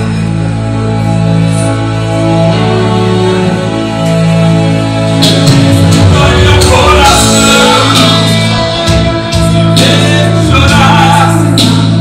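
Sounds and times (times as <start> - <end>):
live band music: 0.0 - 12.0
man singing: 5.7 - 12.0.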